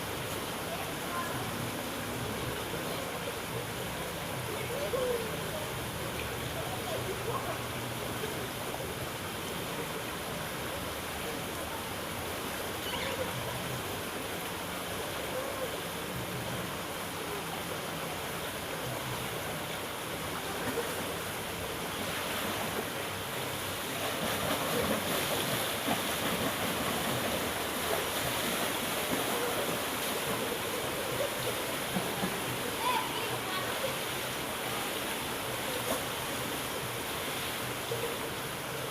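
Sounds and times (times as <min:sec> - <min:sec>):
pool water splashing: 0:00.0 - 0:38.9.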